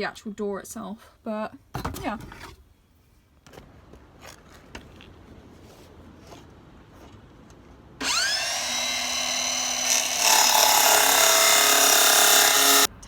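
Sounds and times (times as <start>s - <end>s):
circular saw whine: 8.0s - 12.9s
saw cutting wood: 8.0s - 12.9s.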